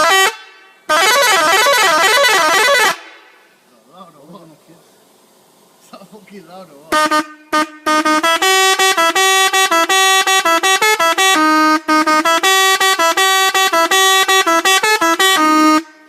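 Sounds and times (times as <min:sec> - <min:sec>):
bus air horns playing a tune: 0:00.0 - 0:03.4, 0:06.9 - 0:16.0.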